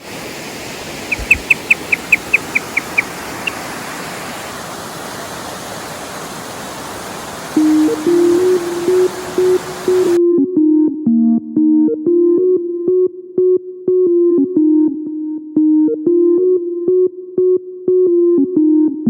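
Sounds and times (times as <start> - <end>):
waterfall rushing: 0.0 - 10.2
electronic synthesizer music: 7.6 - 13.1.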